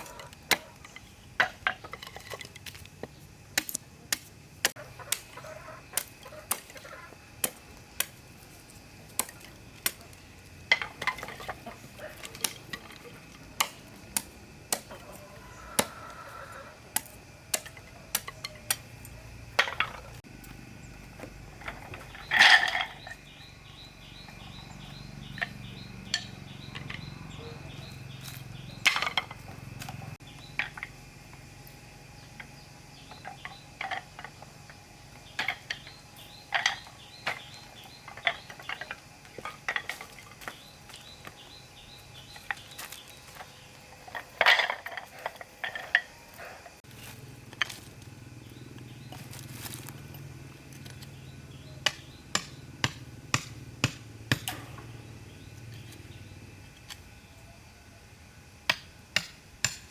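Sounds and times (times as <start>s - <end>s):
objects knocking and clinking: 21.6s - 23.3s.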